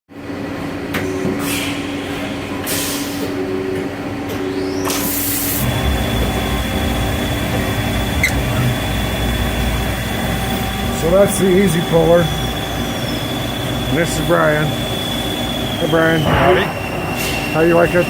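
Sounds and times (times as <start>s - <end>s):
cnc lathe running: 5.6s - 18.0s
steady hum: 5.6s - 18.0s
low rumble: 16.1s - 17.7s.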